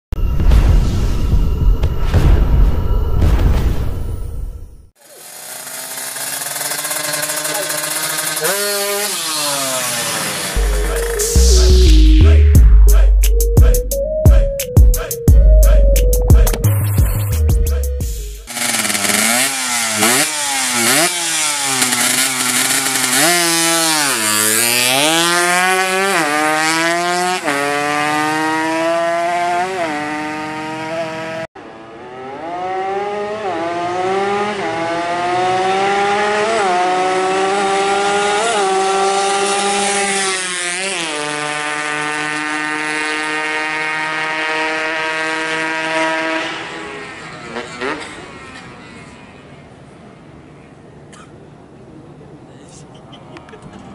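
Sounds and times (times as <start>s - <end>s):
motorcycle engine revving roughly: 5.0s - 13.0s, 18.4s - 49.1s.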